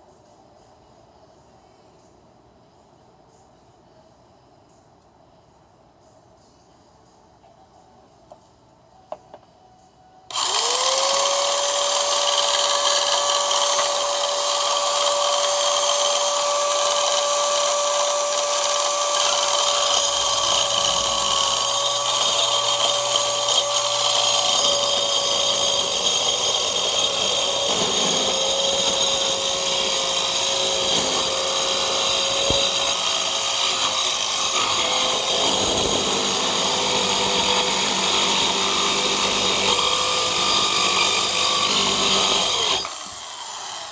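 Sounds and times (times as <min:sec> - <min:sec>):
circular saw motor whine: 0:10.3 - 0:43.9.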